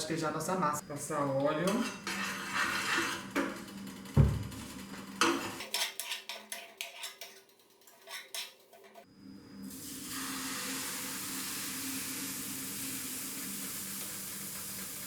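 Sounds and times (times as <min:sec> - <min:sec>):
thump: 0:04.2 - 0:04.5
batter sizzling in pan: 0:09.7 - 0:15.0.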